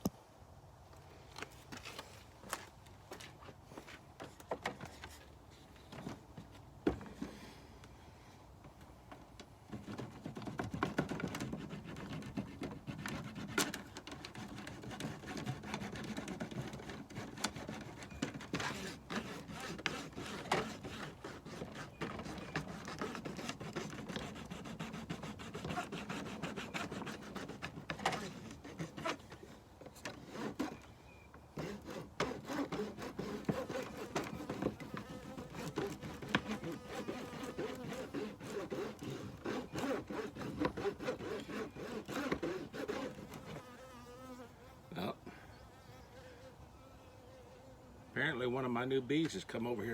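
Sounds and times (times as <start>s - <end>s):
hive frames rubbing: 9.7s - 31.0s, 31.6s - 44.8s.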